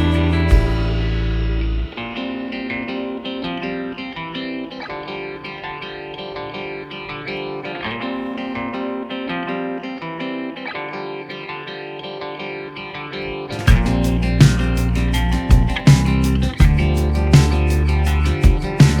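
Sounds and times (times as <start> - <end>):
plucked guitar music: 0.0 - 19.0.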